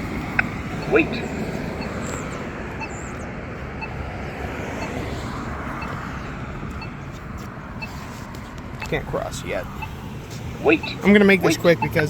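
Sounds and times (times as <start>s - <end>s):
faint pedestrian button beeping: 0.0s - 4.0s, 7.8s - 8.0s, 10.6s - 12.0s
road traffic noise: 0.0s - 12.0s.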